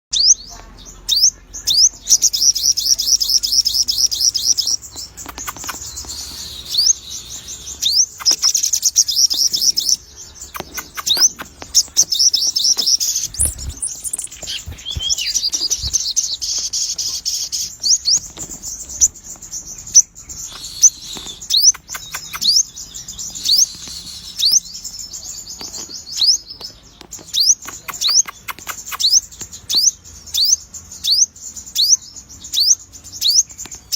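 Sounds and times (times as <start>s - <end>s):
bird trilling high chirps: 0.1s - 33.9s
sharp rising whistled bird notes: 5.6s - 16.8s, 19.9s - 24.8s.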